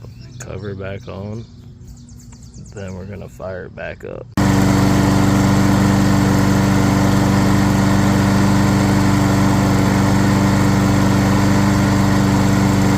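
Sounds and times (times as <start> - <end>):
lawn mower engine running: 4.4 - 12.9.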